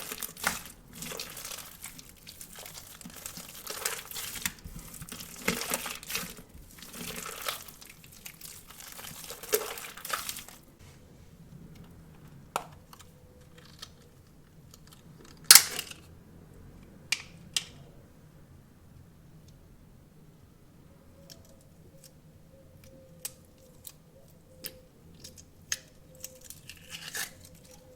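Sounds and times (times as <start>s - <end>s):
stress ball filling crinkling: 0.0s - 16.1s.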